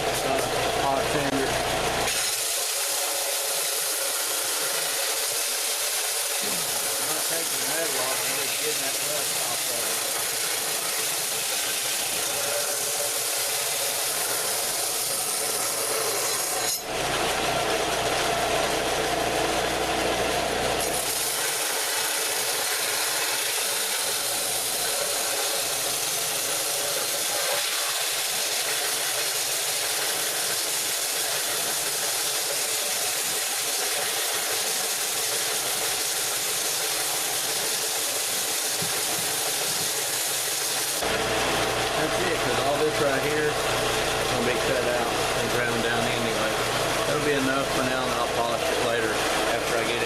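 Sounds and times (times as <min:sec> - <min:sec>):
power tool bristle pad scrubbing metal: 0:02.1 - 0:17.3, 0:20.8 - 0:41.0.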